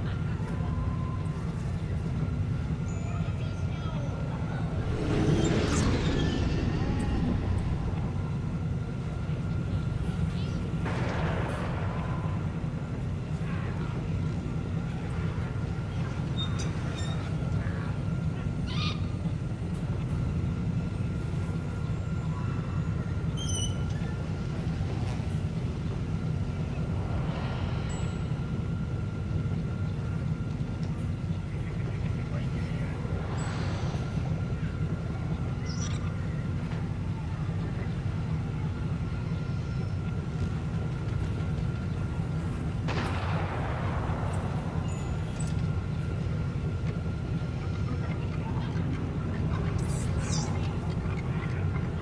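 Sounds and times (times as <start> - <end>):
steady low rumble: 4.4 - 10.7, 40.9 - 49.3
steady low hum: 4.6 - 10.7, 38.2 - 52.0
faint high beeps and chirps: 4.8 - 8.6.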